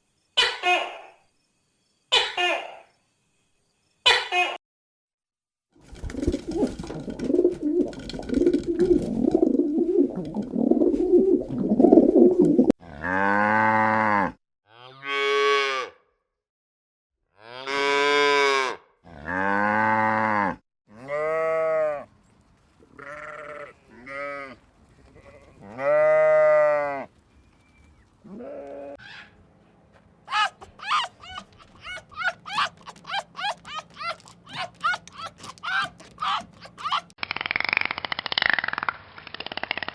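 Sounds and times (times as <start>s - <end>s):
cattle mooing: 12.8s - 15.4s.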